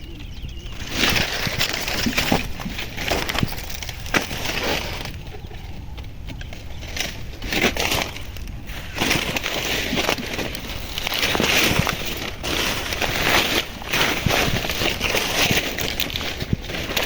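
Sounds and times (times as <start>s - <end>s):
dry maize husks crackling: 0.0s - 17.0s
stalks snapping: 6.2s - 17.0s.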